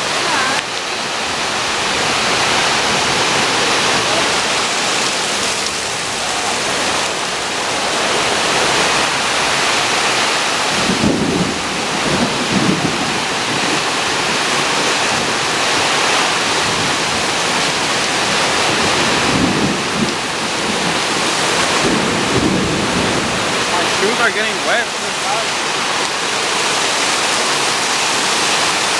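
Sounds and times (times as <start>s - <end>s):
heavy rain pouring: 0.0s - 28.9s.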